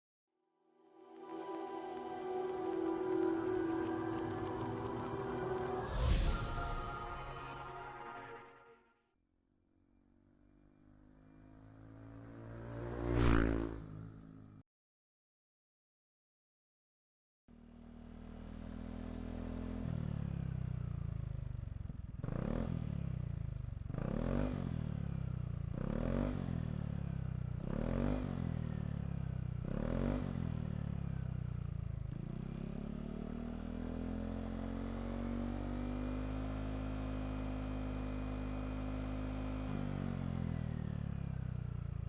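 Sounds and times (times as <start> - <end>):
scooter engine idling and revving: 9.8 - 14.6, 17.5 - 42.0.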